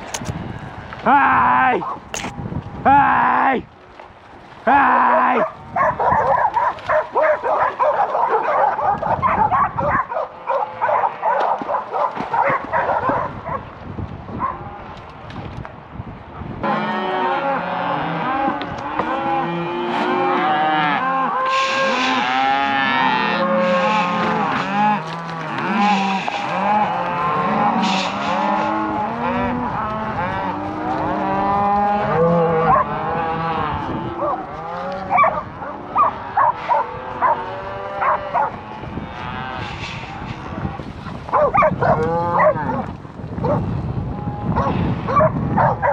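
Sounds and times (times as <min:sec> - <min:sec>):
dog barking: 0:01.8 - 0:02.1, 0:05.2 - 0:13.7, 0:14.4 - 0:14.6, 0:32.6 - 0:33.0, 0:34.2 - 0:34.4, 0:35.1 - 0:38.6, 0:41.3 - 0:42.8, 0:43.4 - 0:43.6, 0:44.6 - 0:45.9
cows mooing and bawling: 0:04.6 - 0:13.6, 0:16.6 - 0:45.9.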